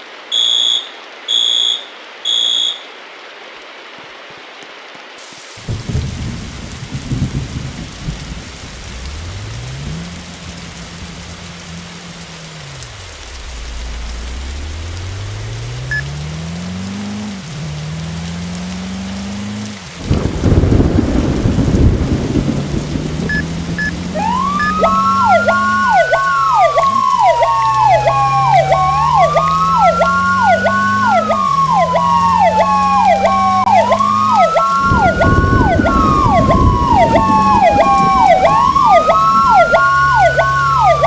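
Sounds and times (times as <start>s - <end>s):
fire engine diesel engine accelerating: 6.0s - 41.0s
burst of loud noise: 19.9s - 25.2s, 34.7s - 40.5s
siren winding up: 23.3s - 41.0s.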